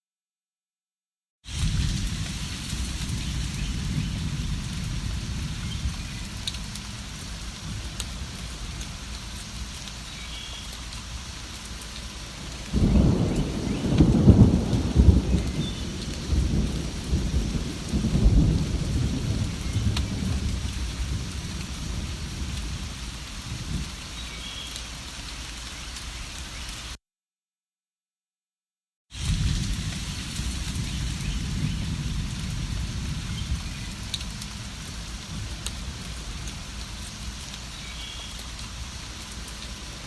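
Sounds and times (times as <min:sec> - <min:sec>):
thunder rumbling: 0:01.5 - 0:09.3, 0:12.0 - 0:24.0, 0:29.2 - 0:37.7
steady rain falling: 0:01.5 - 0:27.0, 0:29.1 - 0:40.0.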